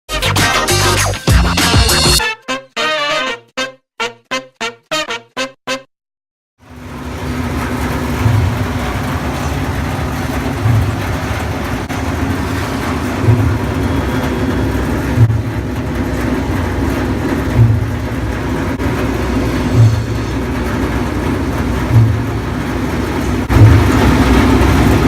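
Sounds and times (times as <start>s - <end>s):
transformer hum and whirr: 6.6s - 25.0s
low thump: 17.6s - 18.0s.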